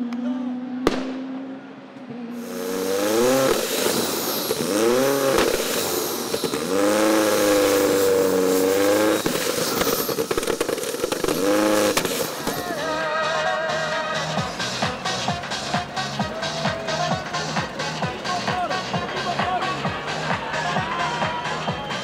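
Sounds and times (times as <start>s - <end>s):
warbling electronic tone: 2.4s - 12.8s
rally car engine revving: 2.4s - 21.2s.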